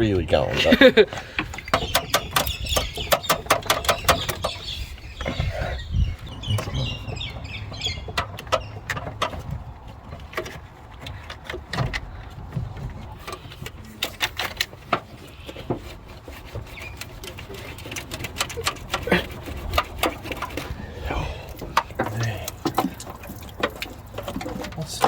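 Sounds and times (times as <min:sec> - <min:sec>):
birds chirping: 0:00.0 - 0:10.5, 0:15.1 - 0:25.0
hand tools knocking on metal: 0:00.8 - 0:05.5.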